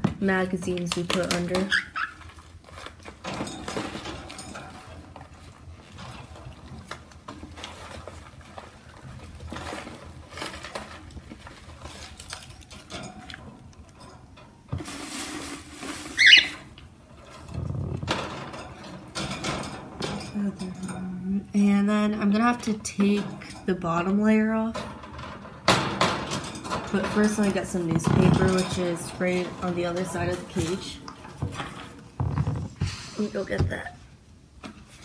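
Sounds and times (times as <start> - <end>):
paper rustling and crinkling: 0.6 - 14.0, 14.8 - 19.0.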